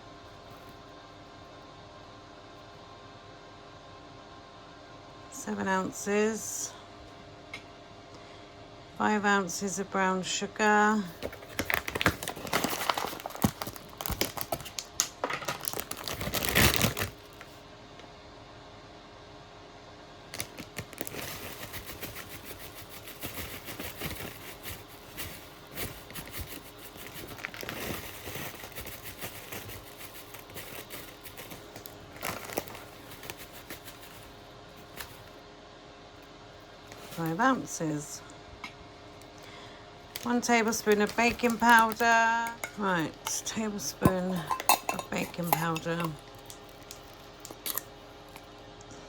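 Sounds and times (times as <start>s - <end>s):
sugar packet crinkling: 11.2s - 17.6s, 20.3s - 35.4s, 40.1s - 48.6s
sugar spooned onto scales: 44.1s - 47.9s.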